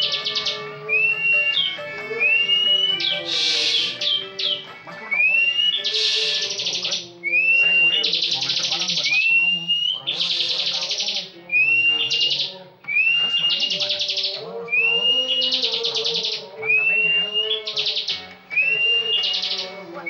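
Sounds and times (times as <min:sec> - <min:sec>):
bird singing buzzy trills: 0:00.0 - 0:20.0.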